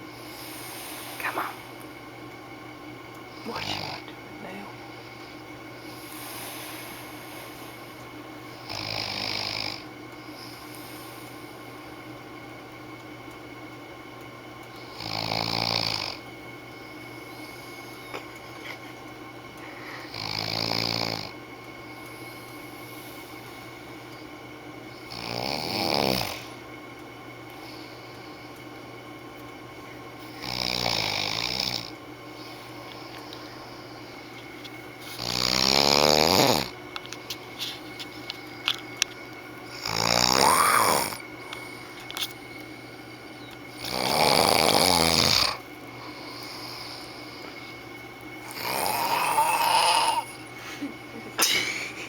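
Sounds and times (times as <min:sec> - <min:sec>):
man snoring: 0:03.5 - 0:04.0, 0:08.6 - 0:09.9, 0:14.9 - 0:16.2, 0:20.0 - 0:21.4, 0:25.0 - 0:26.6, 0:30.3 - 0:32.0, 0:35.2 - 0:36.8, 0:39.7 - 0:41.7, 0:43.7 - 0:45.6, 0:48.4 - 0:50.5.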